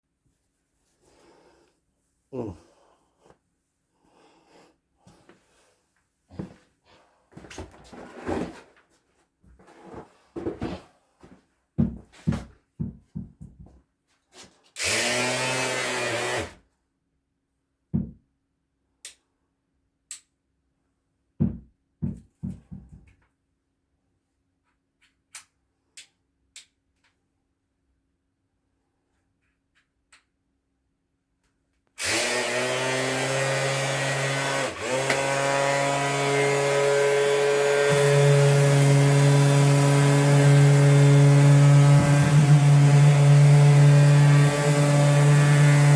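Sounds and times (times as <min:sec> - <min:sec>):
electric sander motor running: 0:14.8 - 0:16.5, 0:32.0 - 0:45.9.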